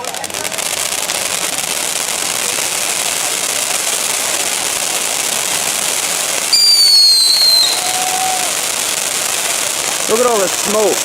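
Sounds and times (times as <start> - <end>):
steady hiss: 0.0 - 11.0
whistling firework: 0.0 - 11.0.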